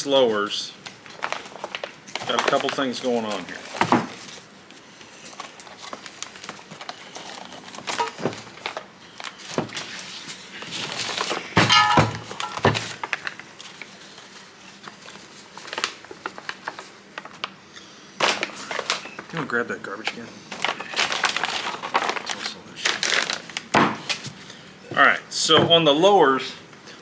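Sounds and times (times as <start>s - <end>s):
parts knocking on workbench: 11.6s - 13.0s.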